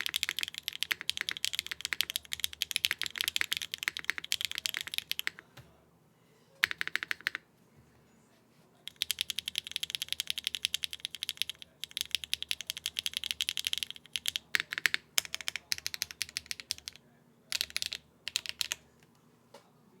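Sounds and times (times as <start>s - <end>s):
mechanical keyboard typing: 0.0s - 5.5s, 6.6s - 7.4s, 8.9s - 18.8s.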